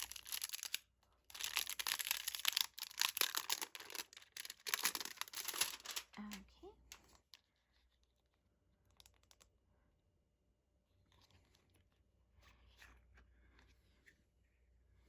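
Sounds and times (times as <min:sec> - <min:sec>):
cd packaging clicks and rustles: 0:00.0 - 0:06.4.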